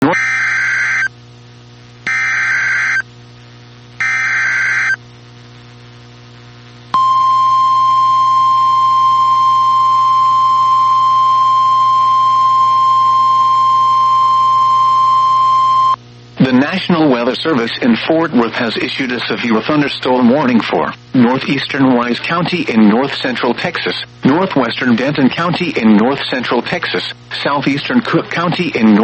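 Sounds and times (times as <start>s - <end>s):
harsh electronic data bursts: 0.0s - 1.1s, 2.1s - 3.0s, 4.0s - 5.0s
steady single-pitch alarm tone: 0.0s - 1.1s, 2.1s - 3.1s, 4.0s - 5.0s, 6.9s - 16.0s
faint radio hiss: 2.8s - 29.0s.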